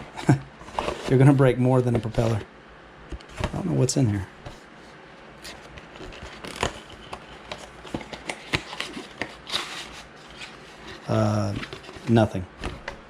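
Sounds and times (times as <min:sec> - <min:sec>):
packaging rustle: 0:05.4 - 0:12.9.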